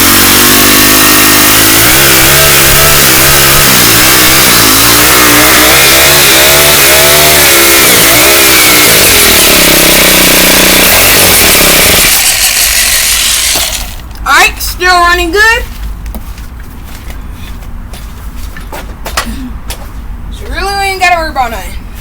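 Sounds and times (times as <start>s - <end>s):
string trimmer engine revving: 0.0s - 14.1s.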